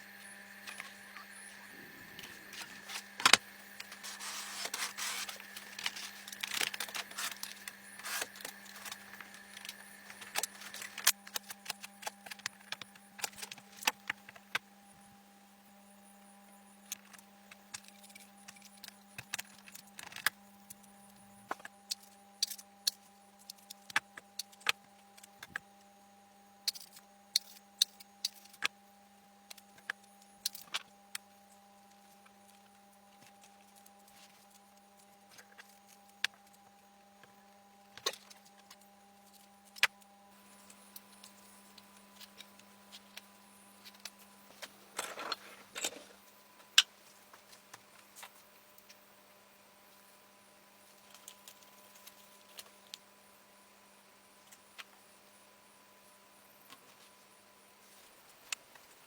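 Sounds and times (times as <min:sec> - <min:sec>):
faint steady hum: 0:00.0 - 0:59.0.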